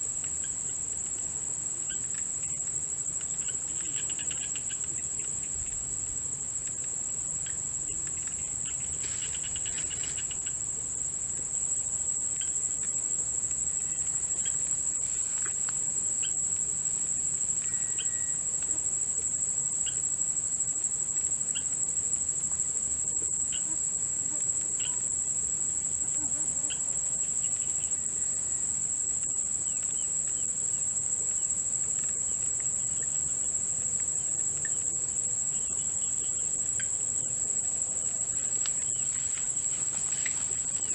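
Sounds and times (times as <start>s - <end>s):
crickets trilling: 0.0s - 40.9s
faint animal chirps: 17.6s - 18.9s.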